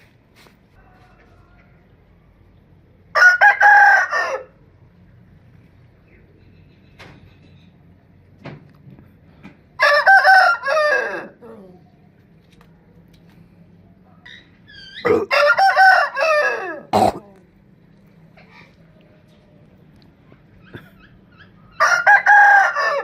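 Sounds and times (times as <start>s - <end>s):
rooster crowing: 0.7s - 2.0s, 3.1s - 4.6s, 9.8s - 11.7s, 14.8s - 17.1s, 21.7s - 23.0s.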